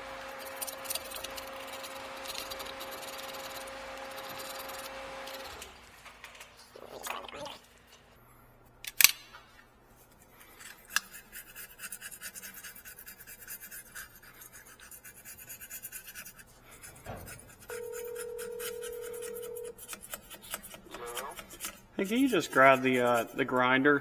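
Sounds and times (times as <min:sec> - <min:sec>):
hand scraping strokes: 0:00.0 - 0:05.6, 0:09.9 - 0:23.8
sharp click: 0:08.8 - 0:09.4.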